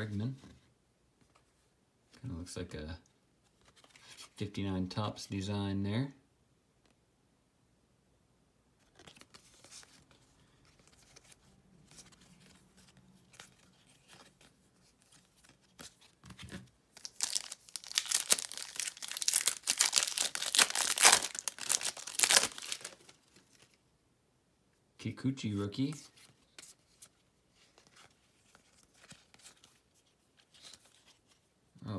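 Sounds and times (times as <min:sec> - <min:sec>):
foil wrapper tearing and crinkling: 0:17.0 - 0:23.0.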